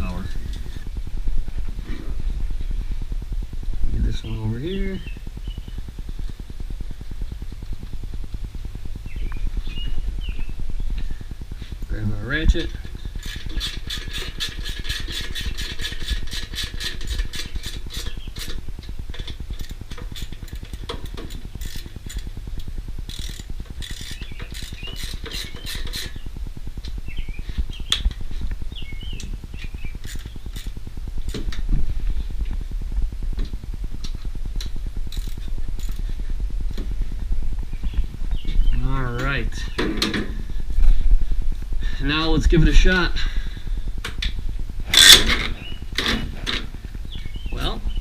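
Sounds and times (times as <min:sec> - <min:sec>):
steady low hum: 0:00.0 - 0:48.0
socket ratchet clicking: 0:13.2 - 0:22.3, 0:23.1 - 0:26.2, 0:44.9 - 0:46.1.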